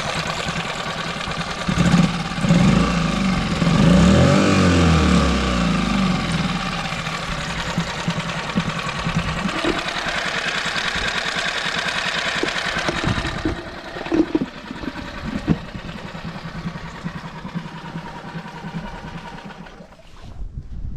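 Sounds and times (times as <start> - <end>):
outboard motor running: 0.0 - 20.2
sharp motor knocks: 6.3 - 19.9.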